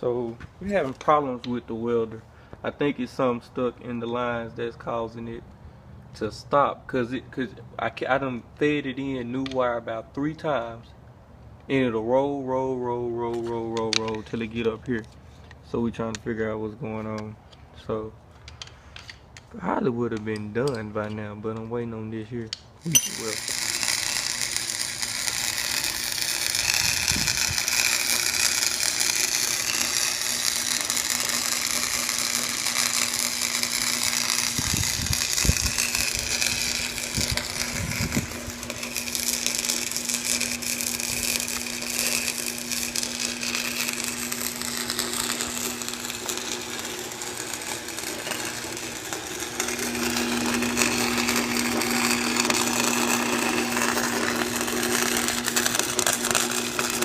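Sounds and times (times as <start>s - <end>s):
low hum: 22.9s - 57.0s
wire-feed motor whirring: 22.9s - 57.0s.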